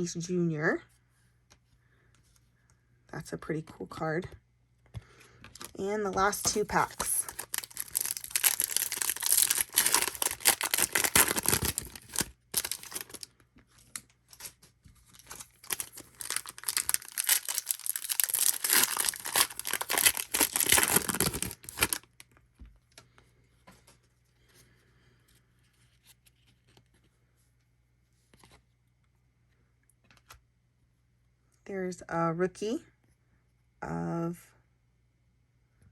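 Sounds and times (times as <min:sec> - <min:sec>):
foil wrapper tearing and crinkling: 0:06.4 - 0:13.3, 0:14.3 - 0:22.2
faint rustles of handling: 0:22.8 - 0:30.3.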